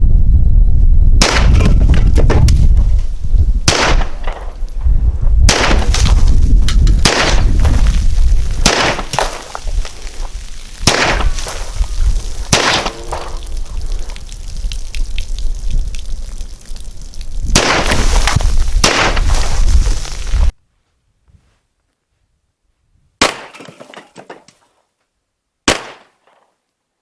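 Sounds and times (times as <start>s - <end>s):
wind rumble on microphone: 0.0s - 20.5s
handgun shots: 3.7s - 4.5s, 8.6s - 9.4s, 10.8s - 11.3s, 12.5s - 13.3s.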